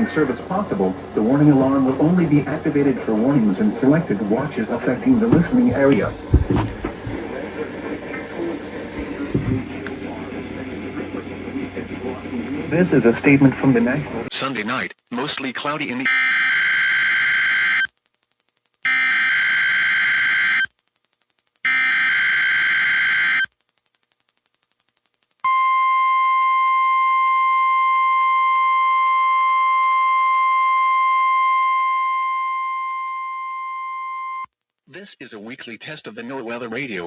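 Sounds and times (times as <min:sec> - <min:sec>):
steady warning alarm tone: 0:00.0 - 0:07.4.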